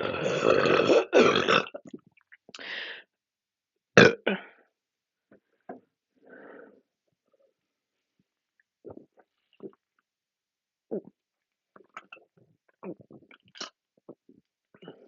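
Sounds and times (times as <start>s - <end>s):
person belching: 0.0s - 1.9s, 4.0s - 4.4s.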